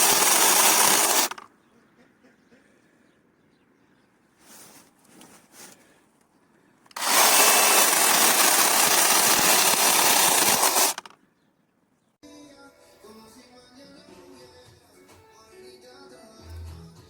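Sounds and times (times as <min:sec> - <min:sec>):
battery chainsaw running: 0:00.0 - 0:01.4, 0:06.9 - 0:11.1.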